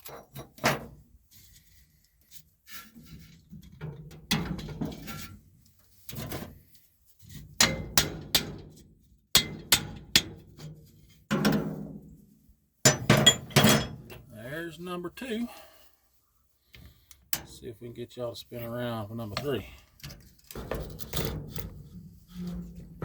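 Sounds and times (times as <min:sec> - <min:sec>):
hammer clanging on steel: 0:12.9 - 0:14.0.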